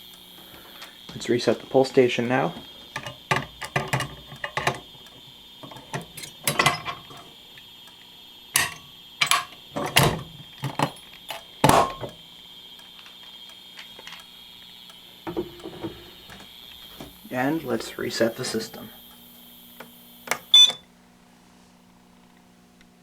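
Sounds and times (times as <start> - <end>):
metallic clicks and knocks: 3.0 - 4.9, 5.6 - 7.3, 8.6 - 12.2.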